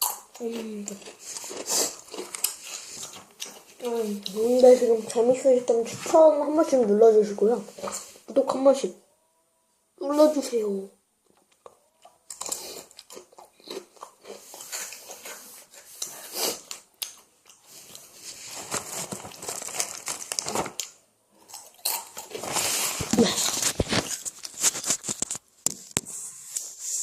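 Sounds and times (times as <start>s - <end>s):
plastic snack bag crinkling: 0.4s - 4.2s, 17.9s - 25.5s.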